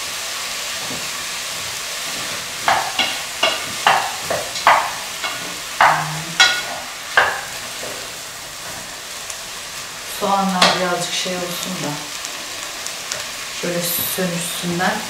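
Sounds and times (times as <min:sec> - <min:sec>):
meat and onions sizzling in a pot: 0:00.0 - 0:15.0
spoon clinking on metal pot: 0:02.7 - 0:07.5.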